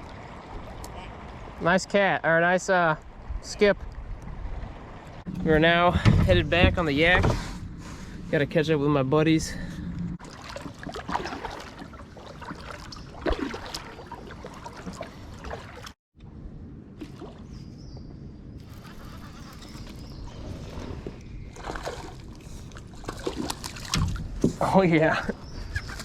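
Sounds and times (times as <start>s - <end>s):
water sloshing around kayak: 9.6s - 16.0s, 18.6s - 26.0s
paddle splashes: 10.2s - 16.0s, 18.6s - 24.7s.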